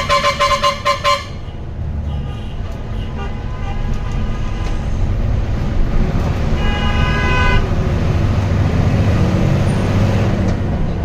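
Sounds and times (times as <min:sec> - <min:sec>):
bus horn: 0:00.0 - 0:05.0, 0:06.5 - 0:07.8
engine rumble: 0:00.0 - 0:11.0
traffic: 0:00.0 - 0:11.0.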